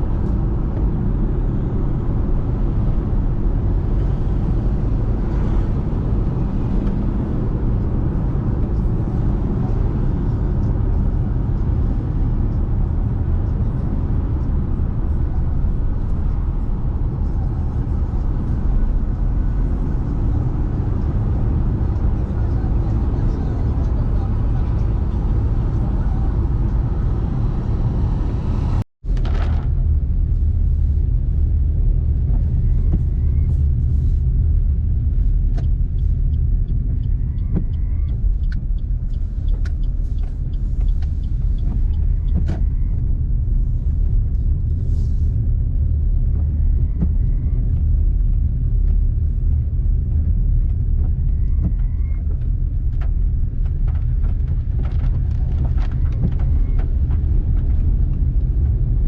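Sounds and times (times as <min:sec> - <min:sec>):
car road noise on wet road: 0:00.0 - 0:59.0.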